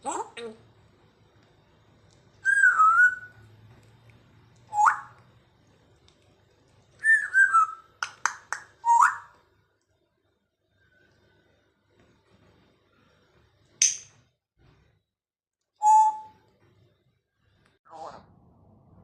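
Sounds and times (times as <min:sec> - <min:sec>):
parrot whistling: 0:02.4 - 0:03.4, 0:04.7 - 0:05.2, 0:07.0 - 0:07.9, 0:08.5 - 0:09.4, 0:15.8 - 0:16.3.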